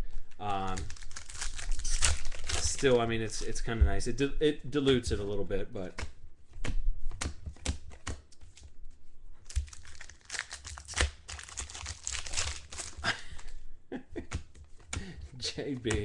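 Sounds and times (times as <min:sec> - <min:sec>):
plastic wrappers crinkling and tearing: 0:00.2 - 0:03.6, 0:09.4 - 0:13.6.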